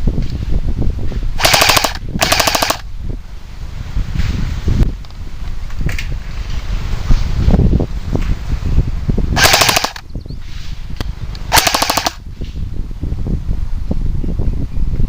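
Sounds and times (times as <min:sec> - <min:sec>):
low microphone rumble: 0:00.0 - 0:11.6, 0:12.2 - 0:15.0
airsoft gun full-auto bursts: 0:01.4 - 0:02.8, 0:09.4 - 0:10.0, 0:11.5 - 0:12.2.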